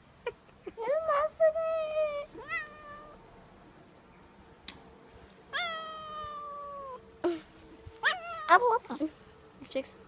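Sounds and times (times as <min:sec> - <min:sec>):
cat meowing: 0:02.4 - 0:03.2, 0:05.5 - 0:07.0, 0:08.0 - 0:08.7.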